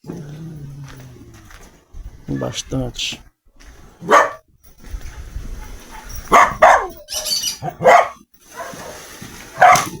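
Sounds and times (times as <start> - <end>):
dog barking: 4.0 - 4.4, 5.6 - 9.0, 9.6 - 10.0.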